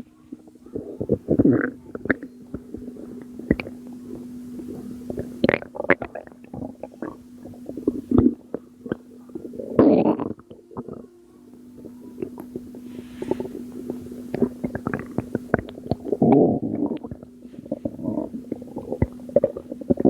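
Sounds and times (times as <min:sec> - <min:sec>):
steady low hum: 0:00.0 - 0:20.0
belly gurgling: 0:13.2 - 0:20.0.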